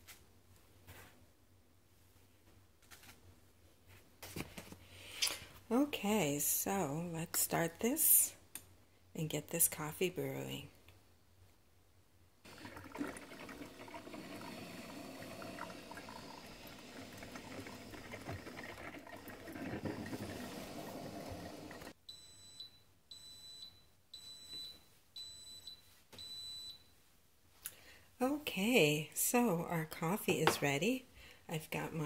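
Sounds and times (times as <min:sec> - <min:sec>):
coffee maker gurgling: 0:12.5 - 0:21.9.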